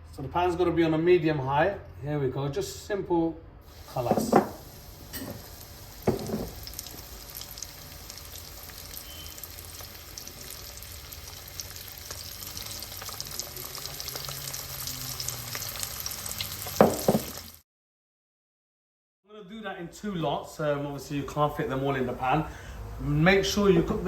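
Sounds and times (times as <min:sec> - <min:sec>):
chicken frying in hot oil: 0:03.7 - 0:17.6.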